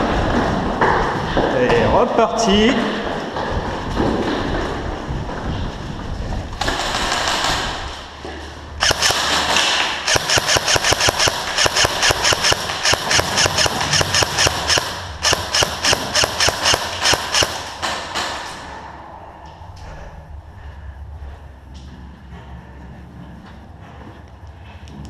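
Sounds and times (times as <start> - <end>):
airsoft gun firing rapid shots: 6.6 - 7.8, 8.8 - 18.5.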